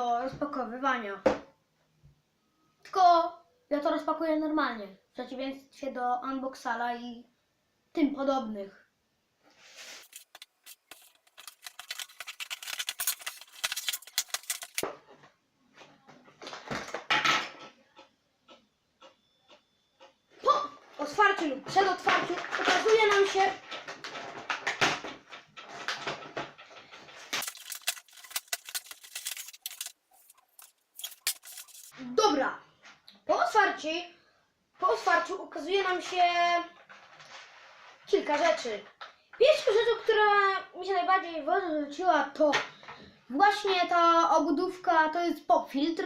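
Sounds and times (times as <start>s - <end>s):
packaging crackling and rustling: 10.0s - 14.8s, 22.2s - 32.0s.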